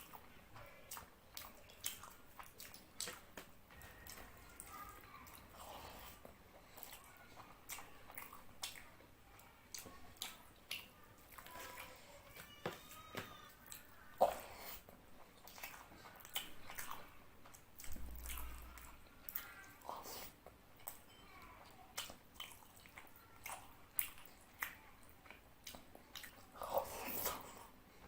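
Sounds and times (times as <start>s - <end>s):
person chewing with wet smacks: 0.0s - 12.6s, 13.4s - 28.0s.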